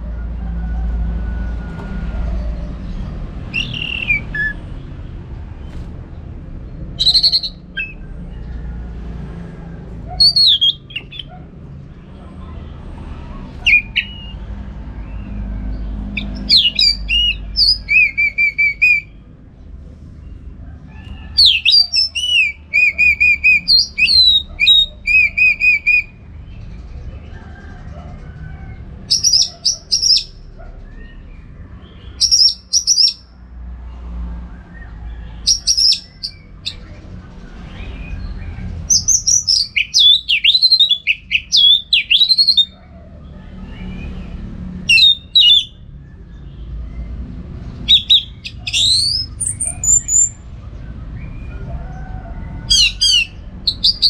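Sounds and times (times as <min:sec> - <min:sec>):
thrush singing whistled phrases: 0:03.5 - 0:04.6, 0:07.0 - 0:08.0, 0:10.2 - 0:11.3, 0:13.6 - 0:14.4, 0:16.2 - 0:19.2, 0:21.4 - 0:26.2, 0:38.9 - 0:42.8, 0:44.9 - 0:45.8, 0:47.9 - 0:50.4, 0:52.7 - 0:54.0.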